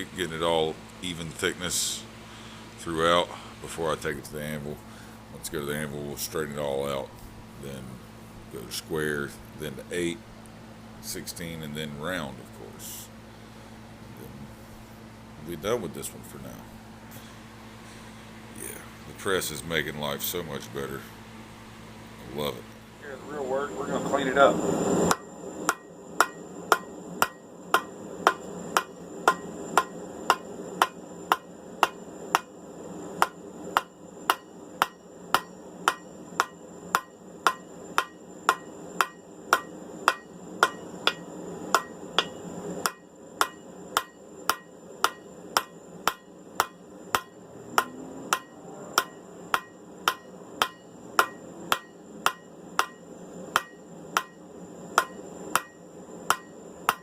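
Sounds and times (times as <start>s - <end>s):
steady hum: 0.0s - 57.0s
hammer striking steel on anvil: 25.1s - 32.6s, 33.2s - 54.4s, 55.0s - 57.0s.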